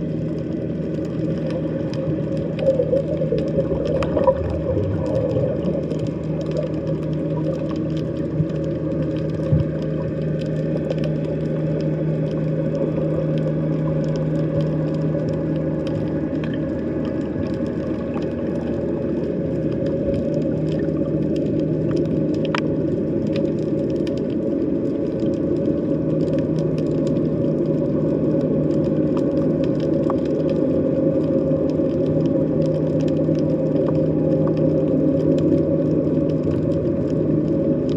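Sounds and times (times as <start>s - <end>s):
underwater low drone: 0.0s - 37.9s.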